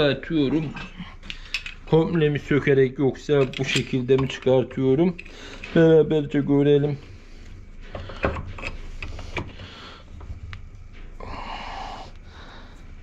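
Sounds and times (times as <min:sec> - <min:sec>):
metal shaft scraping and sliding: 0:00.6 - 0:10.7
metal gearbox parts clinking: 0:01.2 - 0:06.0.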